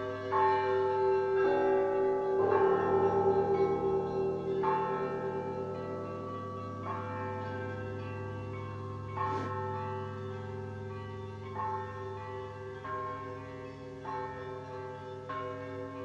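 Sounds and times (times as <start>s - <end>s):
church bells ringing: 0.0s - 16.0s
deep steady low tone: 2.7s - 9.5s.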